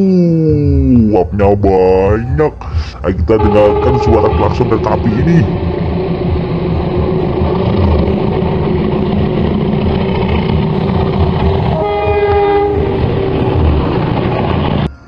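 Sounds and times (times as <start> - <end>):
train rumble and rail clatter: 1.4 - 15.0
train horn blast: 3.3 - 8.7, 11.6 - 13.6.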